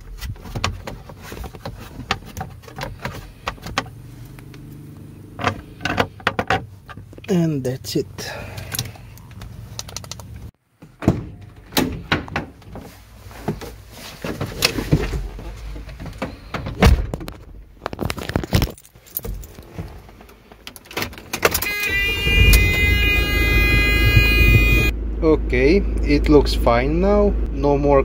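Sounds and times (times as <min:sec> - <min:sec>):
handling knocks and clicks: 0:00.0 - 0:07.3, 0:08.6 - 0:23.0
van engine starting and running: 0:00.0 - 0:28.0.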